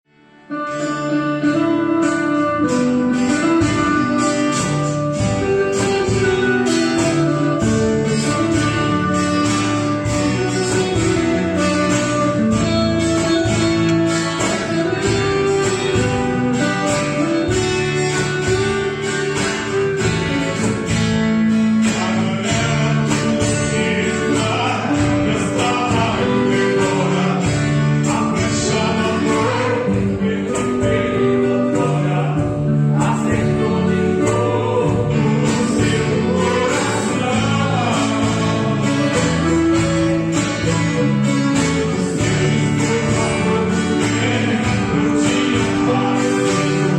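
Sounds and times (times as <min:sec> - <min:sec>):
guitar: 0:00.0 - 0:46.9
men singing a hymn: 0:21.7 - 0:40.5, 0:41.7 - 0:46.9.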